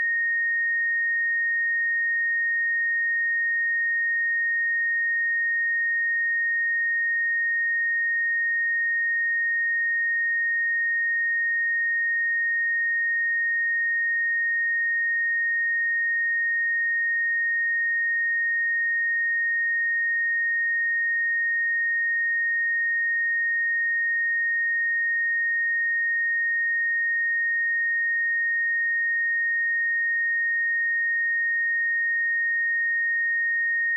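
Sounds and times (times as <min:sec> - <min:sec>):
high sine-wave test tone: 0:00.0 - 0:33.9.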